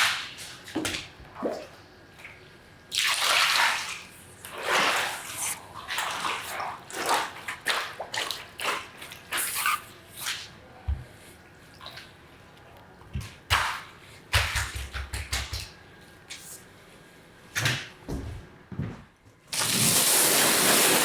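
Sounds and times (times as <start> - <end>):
water splashing and sloshing: 0.0 - 10.5, 11.1 - 12.4.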